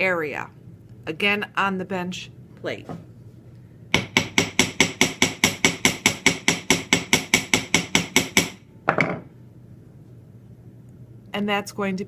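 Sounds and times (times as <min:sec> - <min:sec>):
hammer tapping metal wire: 0:03.9 - 0:08.6.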